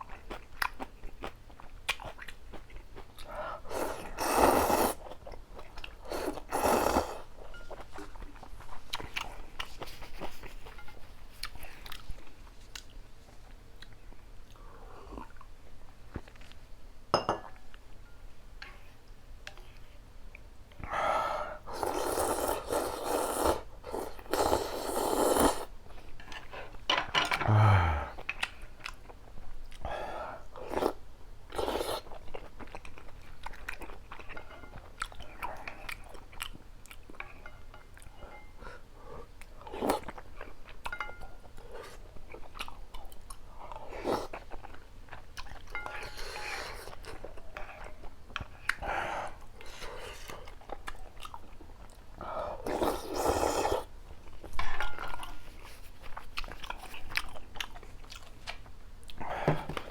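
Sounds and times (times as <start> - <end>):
chewing and crunching: 0.0 - 3.4, 5.0 - 16.6, 30.6 - 38.5, 39.3 - 59.2.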